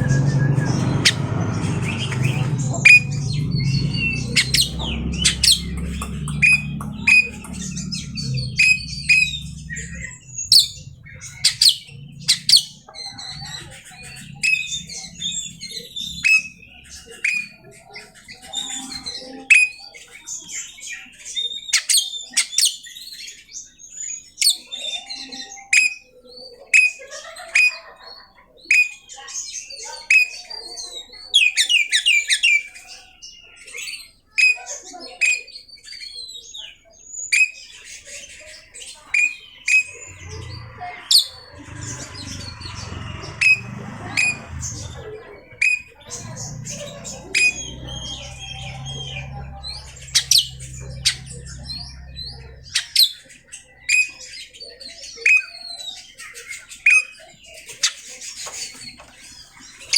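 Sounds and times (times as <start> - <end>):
low hum: 0.0 - 19.5, 39.7 - 53.7
harsh squawky bird notes: 0.0 - 19.8, 39.2 - 54.1.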